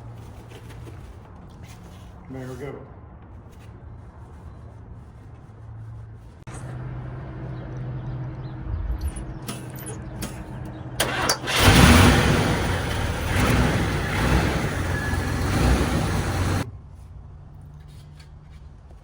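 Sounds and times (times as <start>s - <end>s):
car engine starting: 8.0s - 16.7s.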